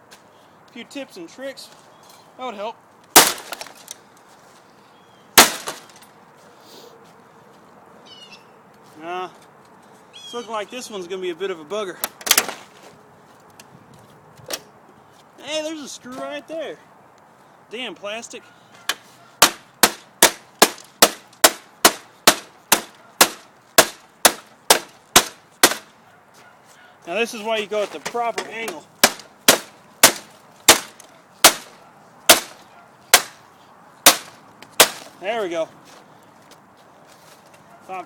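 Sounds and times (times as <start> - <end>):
hammer blows on plastic casing: 18.9 - 25.9, 28.1 - 33.4.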